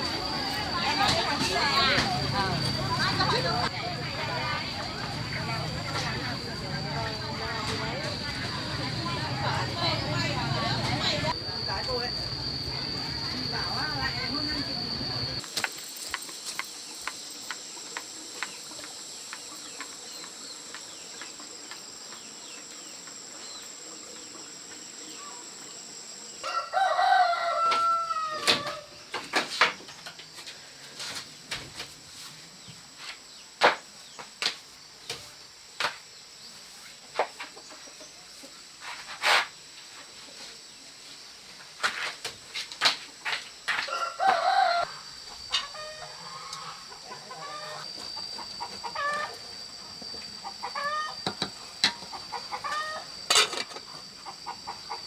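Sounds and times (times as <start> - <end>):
high-pitched whine: 0.0 - 31.5, 43.3 - 55.0
rooster crowing: 26.4 - 29.0, 43.7 - 49.4, 50.5 - 51.4, 52.3 - 53.2.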